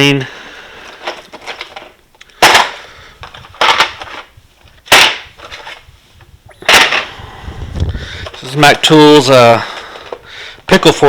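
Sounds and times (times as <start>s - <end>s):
tool cases clacking together: 0.8s - 5.8s.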